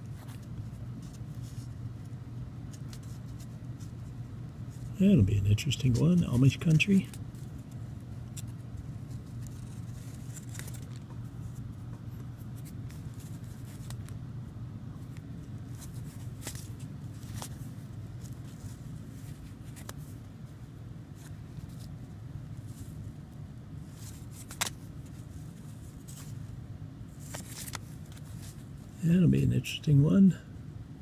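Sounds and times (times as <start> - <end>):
steady low hum: 0.0 - 31.0
paper and card clicking and rustling: 4.8 - 11.3, 12.5 - 14.2, 15.6 - 20.1, 23.8 - 26.4, 27.2 - 28.6.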